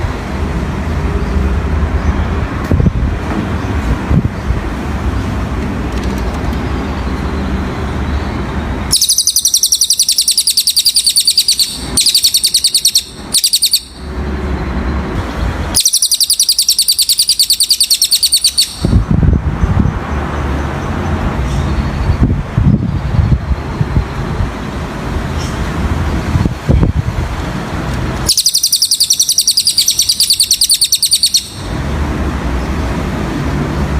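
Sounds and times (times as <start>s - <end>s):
road traffic rumble: 0.0s - 33.9s
songbird rapid trill: 8.0s - 14.2s, 15.4s - 19.0s, 28.2s - 31.8s.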